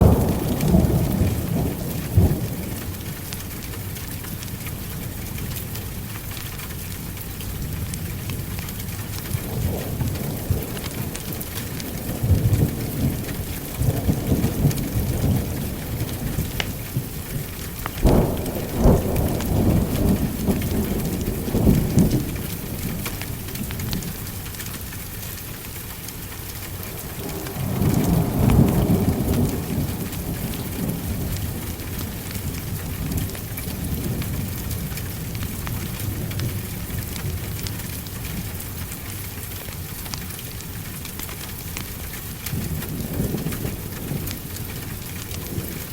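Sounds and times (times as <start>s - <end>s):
rolling thunder: 0.0s - 3.4s, 7.6s - 24.2s, 26.7s - 38.5s
heavy rain: 0.0s - 45.9s.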